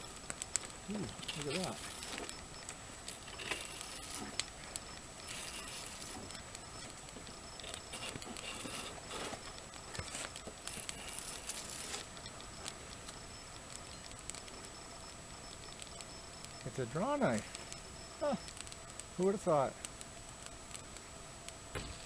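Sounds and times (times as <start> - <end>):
small clicks and taps: 0.2 - 14.8, 15.5 - 16.7, 18.4 - 19.1
knife scraping bark off stick: 7.6 - 9.4.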